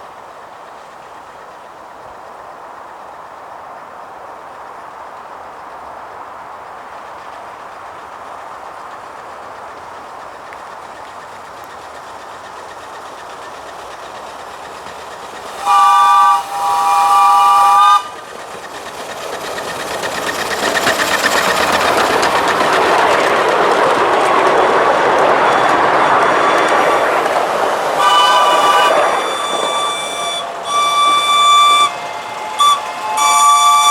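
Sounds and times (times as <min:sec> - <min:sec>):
train wheel clatter: 0:00.0 - 0:33.9
locomotive multi-note chime: 0:28.0 - 0:33.9.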